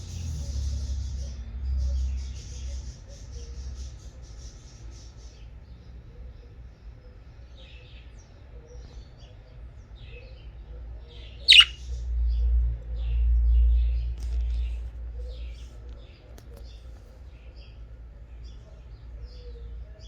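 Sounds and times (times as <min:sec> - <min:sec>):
budgerigars chirping: 0:11.5 - 0:11.8
loud sharp bird call: 0:11.5 - 0:11.8.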